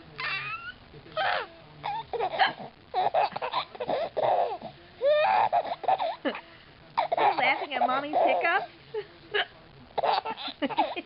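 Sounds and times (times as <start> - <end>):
baby laughing: 0.2 - 6.4, 7.0 - 8.4, 10.0 - 11.0.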